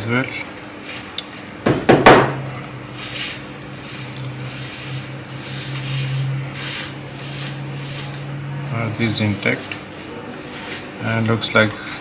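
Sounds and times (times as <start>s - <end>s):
loud knock: 1.6s - 2.5s
soft rubbing and scraping: 3.0s - 8.4s, 9.4s - 11.0s.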